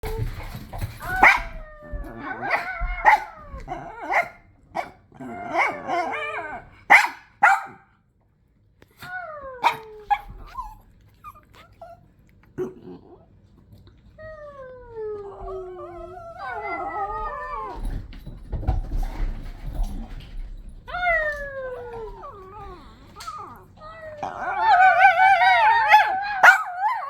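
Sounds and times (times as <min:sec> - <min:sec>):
dog yips and barks: 0:01.1 - 0:01.6, 0:06.9 - 0:07.8, 0:09.6 - 0:10.8, 0:24.6 - 0:27.0.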